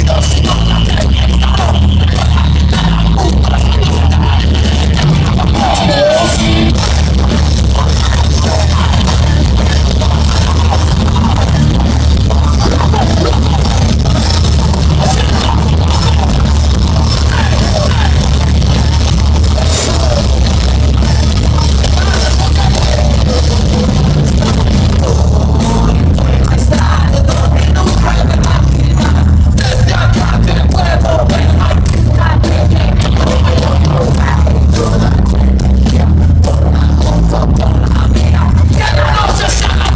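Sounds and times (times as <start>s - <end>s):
heavy metal band playing: 0.0s - 39.9s
person singing: 0.0s - 39.9s.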